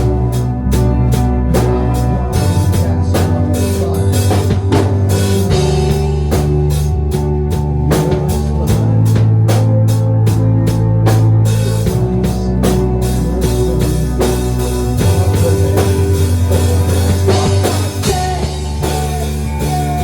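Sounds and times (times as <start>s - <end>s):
bass line: 0.0s - 20.0s
electric guitar: 0.0s - 20.0s
rock music: 0.0s - 20.0s
steady drum beat: 0.0s - 20.0s.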